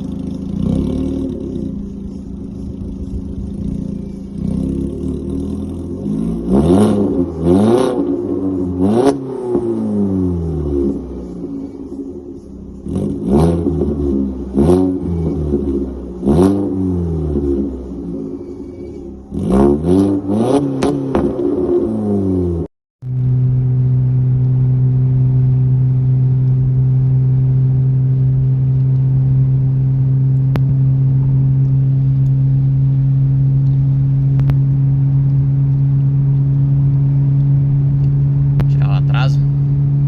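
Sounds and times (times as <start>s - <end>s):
car engine revving: 0.0s - 40.0s.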